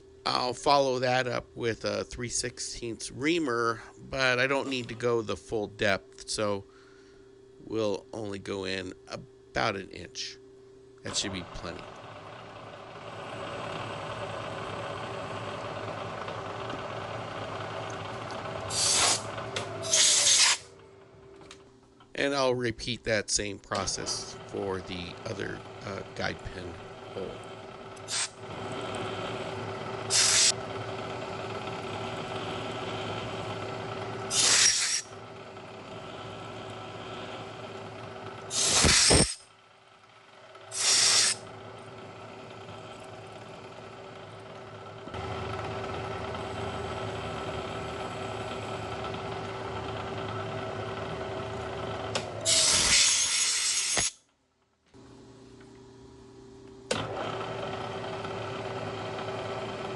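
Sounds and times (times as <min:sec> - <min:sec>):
milling machine humming: 0:02.6 - 0:05.8, 0:11.1 - 0:22.5, 0:23.4 - 0:53.5, 0:55.0 - 0:59.9
loud hissing bursts: 0:18.7 - 0:19.2, 0:19.8 - 0:20.6, 0:30.1 - 0:30.5, 0:34.3 - 0:35.0, 0:38.5 - 0:39.4, 0:40.7 - 0:41.4.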